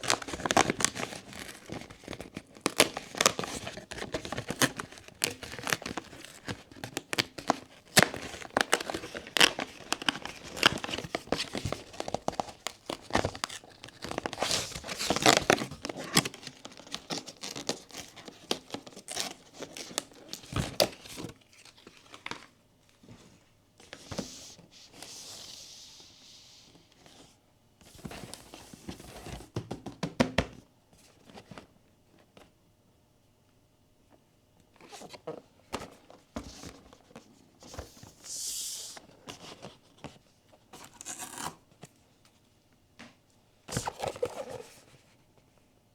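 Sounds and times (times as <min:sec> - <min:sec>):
packaging crinkling and tearing: 0:00.0 - 0:22.5.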